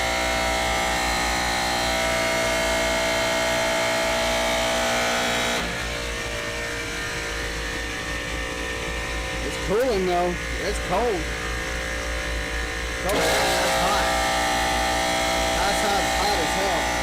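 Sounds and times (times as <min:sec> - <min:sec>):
machine whine: 0:00.0 - 0:17.0
rooftop air conditioning unit humming: 0:05.6 - 0:17.0.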